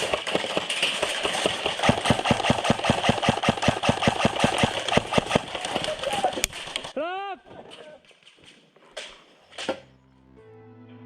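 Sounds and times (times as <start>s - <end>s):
airsoft gun full-auto burst: 0.0s - 6.9s.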